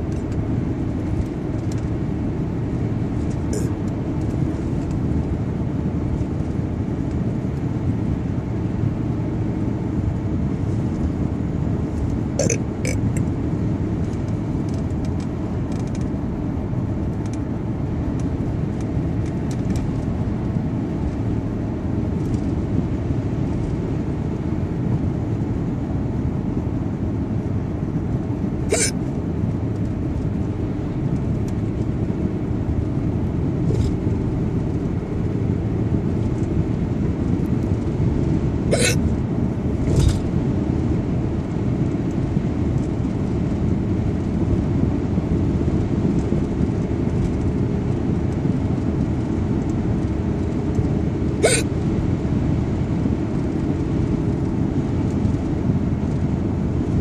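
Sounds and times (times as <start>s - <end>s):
steady low rumble: 0.0s - 57.0s
person hiccuping: 3.5s - 3.7s, 12.4s - 13.2s, 28.7s - 29.0s, 38.7s - 39.0s, 51.4s - 51.7s.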